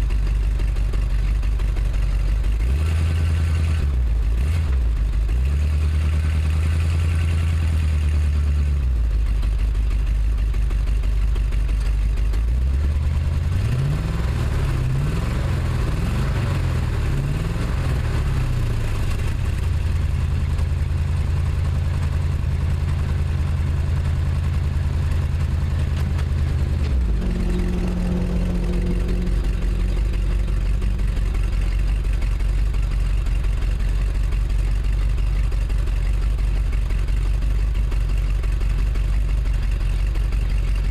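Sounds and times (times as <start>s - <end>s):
misfiring engine revving: 1.9s - 8.3s, 12.4s - 37.4s.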